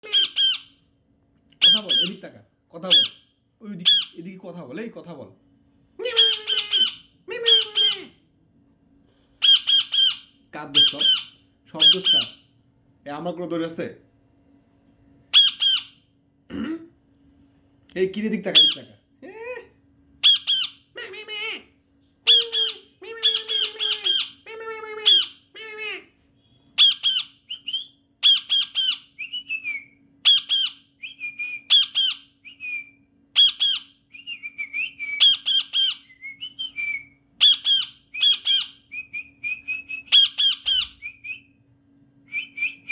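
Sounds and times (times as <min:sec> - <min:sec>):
parrot squawking: 0:00.0 - 0:00.8, 0:01.6 - 0:03.2, 0:03.8 - 0:04.2, 0:06.0 - 0:08.2, 0:09.4 - 0:12.4, 0:15.3 - 0:16.0, 0:18.5 - 0:18.9, 0:20.2 - 0:21.7, 0:22.3 - 0:26.1, 0:26.8 - 0:27.5, 0:28.2 - 0:29.1, 0:30.2 - 0:30.8, 0:31.7 - 0:32.3, 0:33.4 - 0:34.0, 0:35.2 - 0:36.1, 0:37.4 - 0:38.8, 0:40.1 - 0:41.1.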